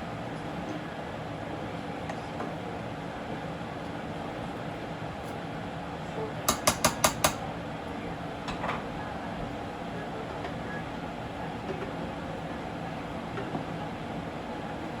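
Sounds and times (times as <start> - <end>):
steady background hum: 0.0 - 15.0
utensil knocking on dishware: 6.5 - 7.4.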